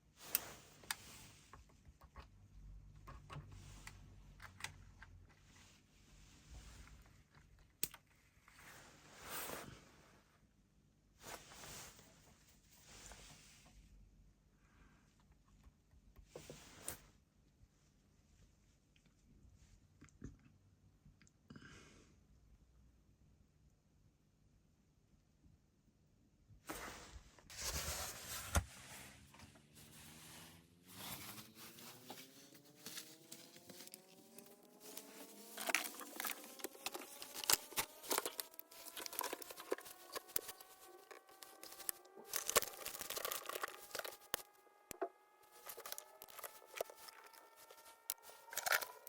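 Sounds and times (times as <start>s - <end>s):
crackles and clicks: 31.0s - 49.0s
power supply whine: 32.1s - 49.0s.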